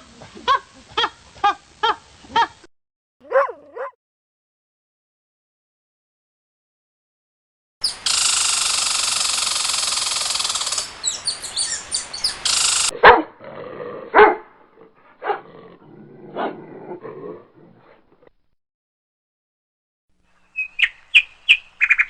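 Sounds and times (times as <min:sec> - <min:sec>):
dog barking: 0:03.2 - 0:04.0, 0:12.9 - 0:13.4, 0:14.1 - 0:14.5, 0:15.2 - 0:15.5
rushing hiss-like noise: 0:07.8 - 0:12.9.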